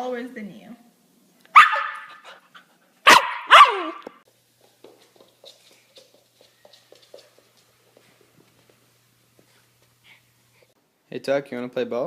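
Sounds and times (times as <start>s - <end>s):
dog barking: 1.5s - 2.2s, 3.0s - 4.0s
faint ticks and rustles: 4.6s - 10.7s.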